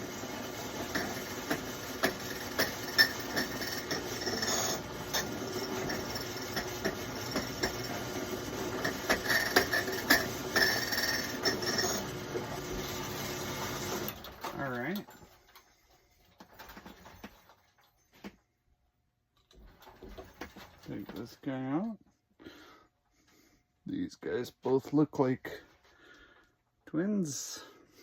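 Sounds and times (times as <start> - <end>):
key cutting machine milling: 0.0 - 14.2
sharp clicks and scrapes: 0.8 - 12.1.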